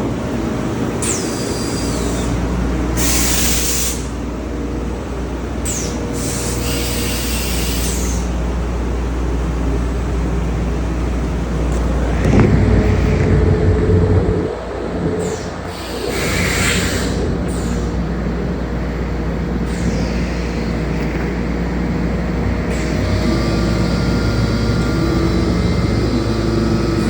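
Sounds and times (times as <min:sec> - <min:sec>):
workshop machinery humming: 0:11.2 - 0:19.5
falling high whines: 0:11.7 - 0:17.3.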